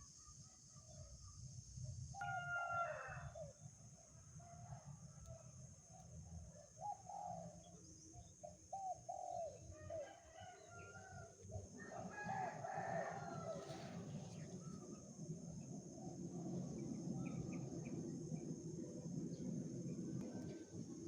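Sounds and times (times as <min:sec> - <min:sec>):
high insect drone: 0:06.8 - 0:21.0.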